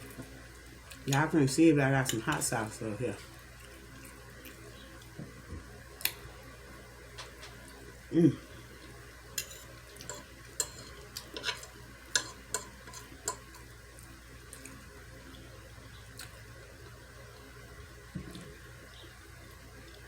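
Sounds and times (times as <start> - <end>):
wet chewing sounds: 3.2 - 5.2, 13.9 - 17.4
low voiced mm: 8.1 - 8.6.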